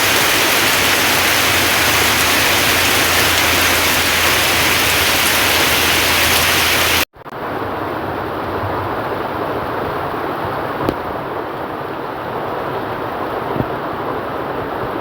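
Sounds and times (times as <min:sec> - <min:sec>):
heavy rain: 0:00.0 - 0:15.0.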